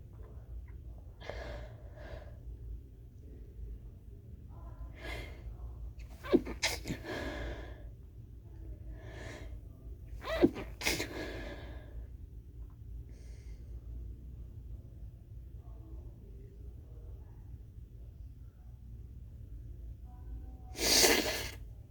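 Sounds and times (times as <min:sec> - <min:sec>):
stifled sneezes: 0:06.1 - 0:07.4, 0:10.2 - 0:11.6, 0:20.8 - 0:21.6.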